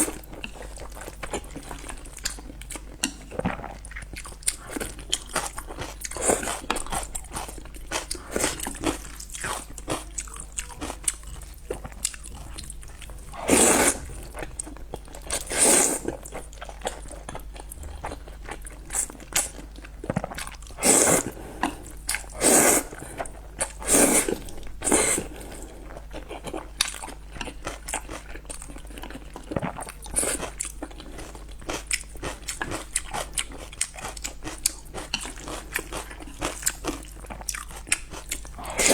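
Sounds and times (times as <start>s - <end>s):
chewing noodles: 0.0s - 38.9s
loud slurps: 13.4s - 14.2s, 15.4s - 16.0s, 20.8s - 21.4s, 22.4s - 23.0s, 23.8s - 25.3s.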